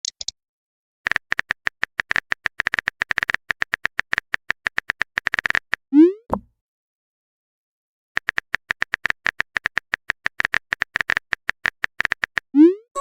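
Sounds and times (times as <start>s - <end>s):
phone keyboard typing clicks: 1.1s - 6.4s, 8.2s - 12.5s.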